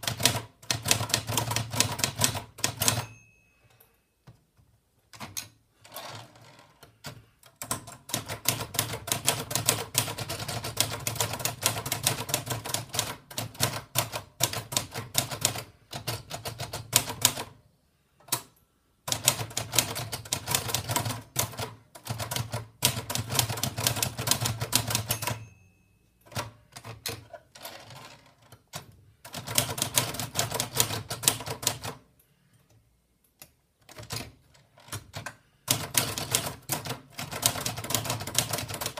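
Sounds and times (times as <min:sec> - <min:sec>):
manual typewriter clatter: 0:00.0 - 0:03.2, 0:05.1 - 0:17.5, 0:19.1 - 0:25.4, 0:26.3 - 0:32.0, 0:33.8 - 0:38.9.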